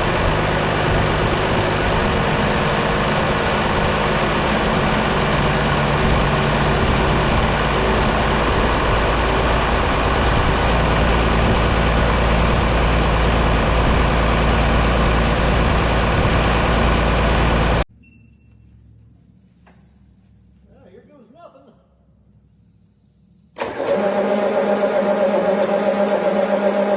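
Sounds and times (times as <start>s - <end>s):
diesel engine idling: 0.0s - 17.9s.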